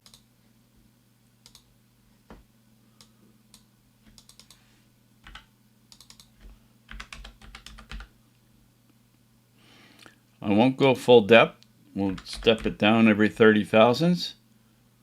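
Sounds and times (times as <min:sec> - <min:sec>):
low steady hum: 0:00.0 - 0:15.0
keyboard keystrokes: 0:05.2 - 0:08.1, 0:12.1 - 0:12.7.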